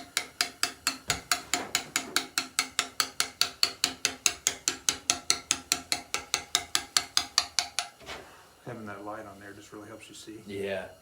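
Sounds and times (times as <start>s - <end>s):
hammer striking steel chisel on stone: 0.0s - 8.0s.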